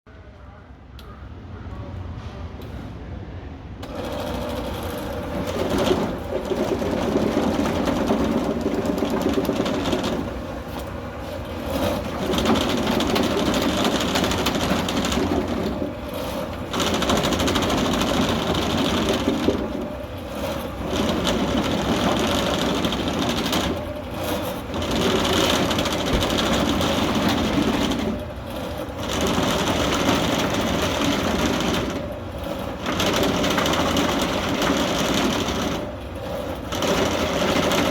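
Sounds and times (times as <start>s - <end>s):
drain cleaning machine running: 3.8s - 37.9s.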